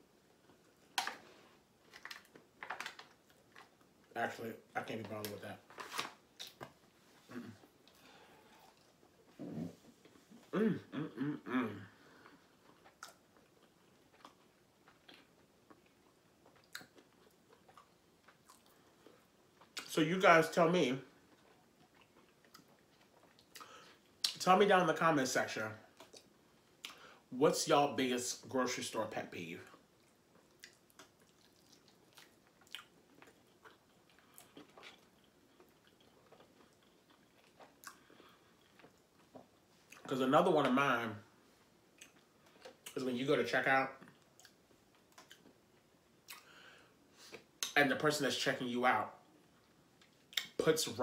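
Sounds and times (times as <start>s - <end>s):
faint chewing with mouth clicks: 6.4s - 10.5s, 11.9s - 19.9s, 21.1s - 24.4s, 25.9s - 27.2s, 29.6s - 40.1s, 41.5s - 43.0s, 44.0s - 47.8s, 49.2s - 50.6s.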